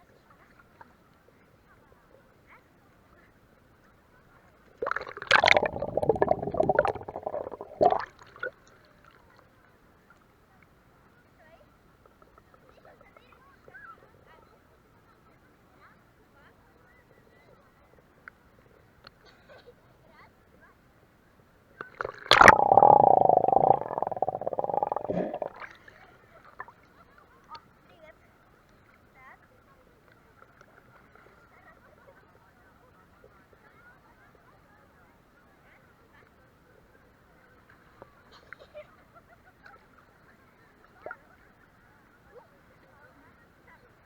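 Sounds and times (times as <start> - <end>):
water splashing and gurgling: 4.8 - 8.1, 21.9 - 25.6
muffled underwater bubbling: 4.8 - 8.5, 21.9 - 25.7.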